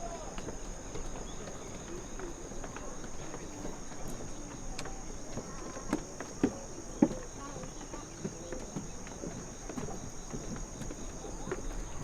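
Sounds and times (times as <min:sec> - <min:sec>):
crickets chirring: 0:00.0 - 0:12.0.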